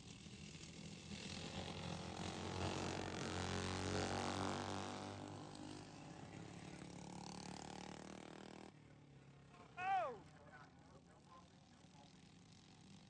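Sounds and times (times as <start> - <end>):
lawnmower engines passing by: 0.1 - 9.8.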